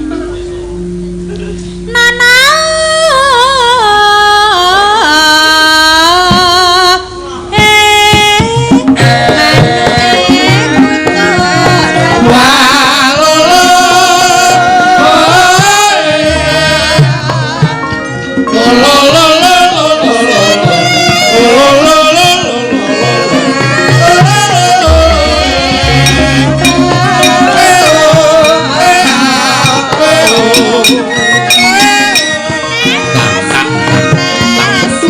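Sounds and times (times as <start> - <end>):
woman singing with vibrato: 1.9 - 35.0
hand drum rhythm: 7.6 - 18.5, 20.6 - 35.0
gamelan music: 24.8 - 34.9.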